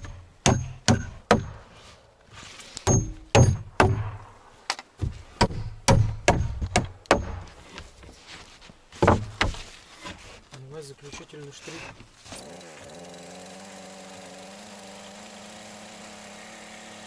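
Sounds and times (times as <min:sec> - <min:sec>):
hammer striking into wood: 0:00.0 - 0:01.6, 0:02.8 - 0:04.2, 0:05.4 - 0:07.6, 0:09.0 - 0:09.6.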